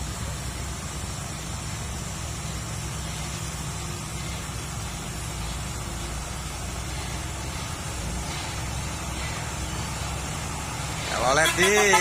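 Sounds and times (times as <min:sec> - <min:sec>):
truck diesel engine running: 0:00.0 - 0:12.0.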